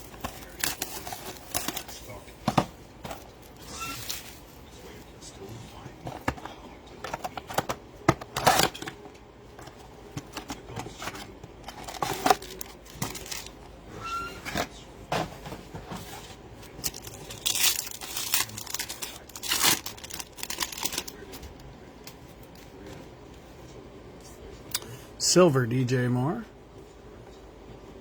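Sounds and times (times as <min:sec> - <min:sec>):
card wrappers tearing and crinkling: 0:00.0 - 0:02.1, 0:03.3 - 0:04.5, 0:07.0 - 0:09.0, 0:10.2 - 0:13.6, 0:16.7 - 0:21.4.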